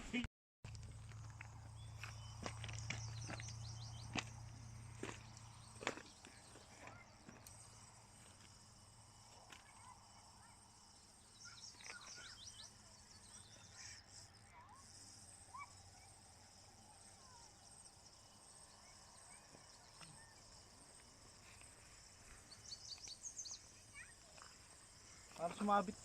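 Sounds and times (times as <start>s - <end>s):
insects droning: 0.1s - 26.0s
bird chirps: 1.7s - 7.9s, 10.9s - 16.1s, 21.4s - 26.0s.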